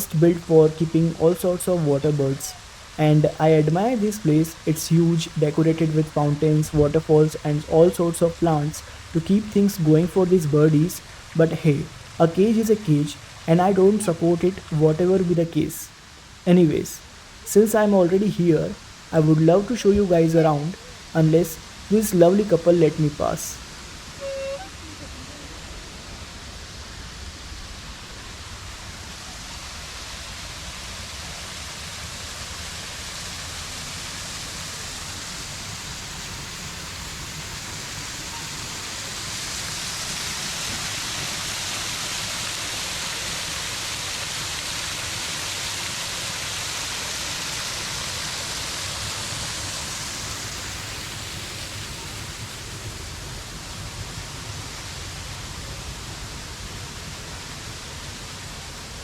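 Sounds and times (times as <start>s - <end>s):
waterfall rushing: 0.0s - 59.0s.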